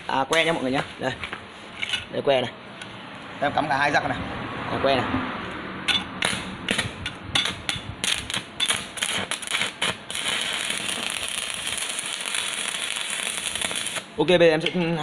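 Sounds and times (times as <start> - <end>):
welding arc crackling and hissing: 6.2 - 14.2.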